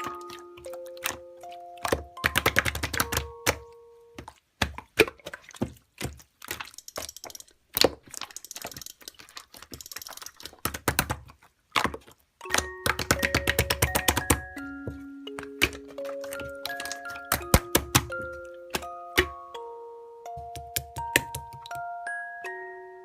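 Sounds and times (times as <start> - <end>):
background music: 0.0 - 4.2, 12.4 - 23.0.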